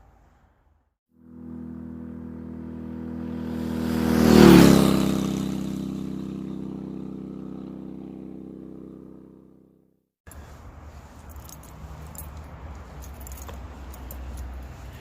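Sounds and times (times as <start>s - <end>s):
vehicle driving past: 1.2s - 9.8s.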